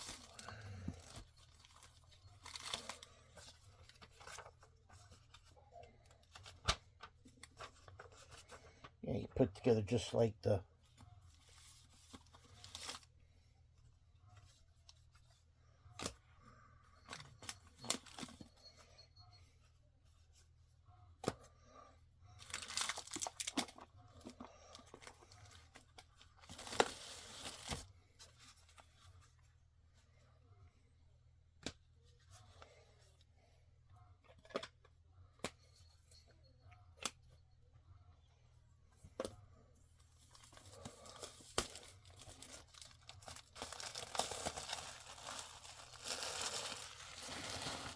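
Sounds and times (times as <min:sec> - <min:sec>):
packaging tearing and crinkling: 0:00.0 - 0:03.0, 0:22.4 - 0:23.7, 0:40.4 - 0:47.9.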